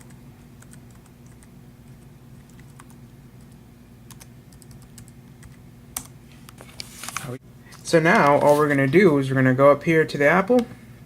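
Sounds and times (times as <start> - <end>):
laptop keyboard typing: 0.0 - 6.1.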